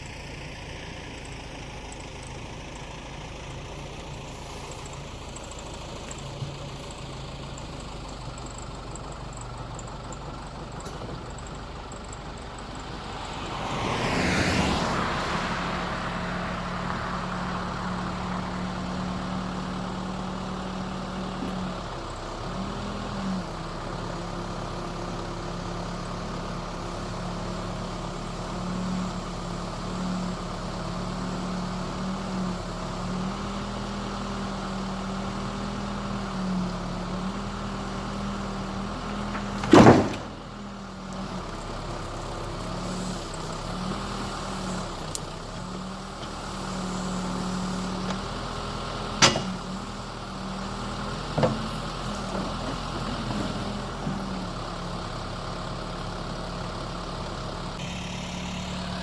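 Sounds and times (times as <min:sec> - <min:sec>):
engine idling: 0:00.0 - 0:59.0
sharp knocks: 0:39.4 - 0:40.4, 0:49.2 - 0:49.6.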